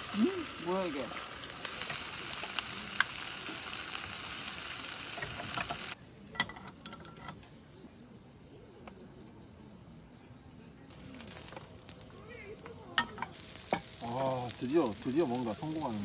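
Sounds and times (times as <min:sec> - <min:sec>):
food sizzling in a pan: 0:00.0 - 0:06.0, 0:10.9 - 0:16.0.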